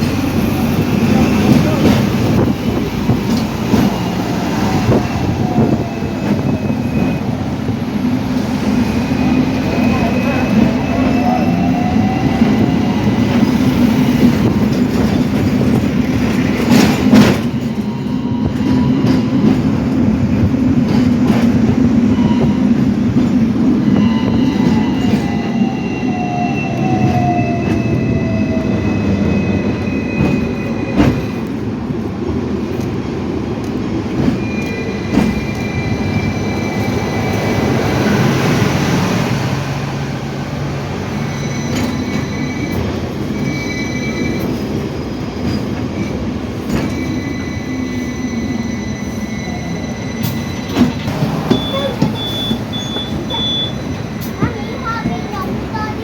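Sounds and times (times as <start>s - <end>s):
tram rumbling: 0.0s - 56.0s
wheel squeal: 41.1s - 44.8s, 45.4s - 55.1s.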